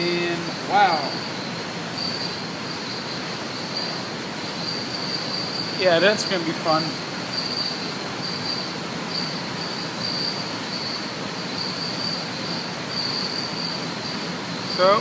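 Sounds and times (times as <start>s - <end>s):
steady background hiss: 0.0s - 15.0s
thin high-pitched whine: 0.0s - 15.0s.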